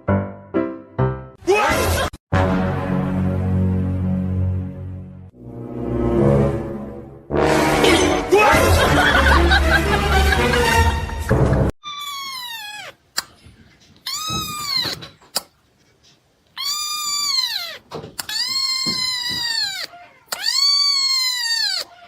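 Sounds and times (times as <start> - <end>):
background music: 0.0 - 11.7
cat meowing loudly: 11.8 - 13.0, 14.1 - 15.1, 16.6 - 22.0.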